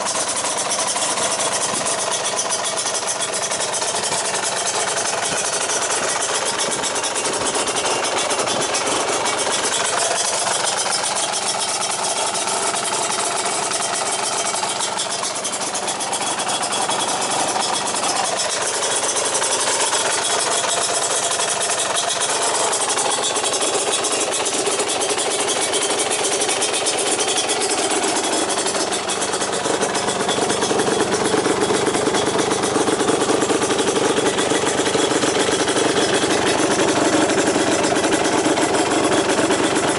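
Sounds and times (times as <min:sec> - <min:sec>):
two-stroke engine running: 0:00.0 - 0:39.9.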